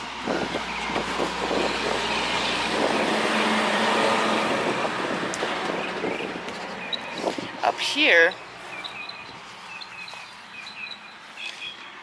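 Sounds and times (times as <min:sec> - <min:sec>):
vehicle driving past: 0:00.0 - 0:07.6.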